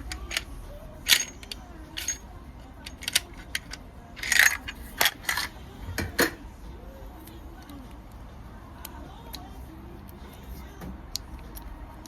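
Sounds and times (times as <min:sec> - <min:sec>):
metallic clicks and clinks: 0:00.0 - 0:06.4.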